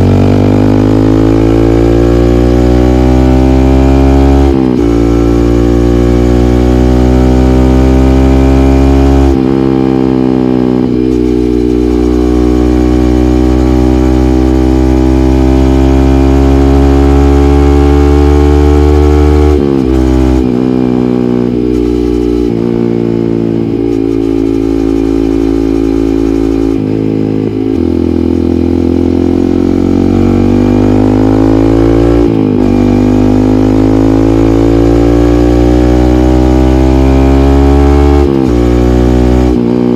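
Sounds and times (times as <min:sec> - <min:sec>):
motorcycle exhaust note climbing: 0:00.0 - 0:39.9.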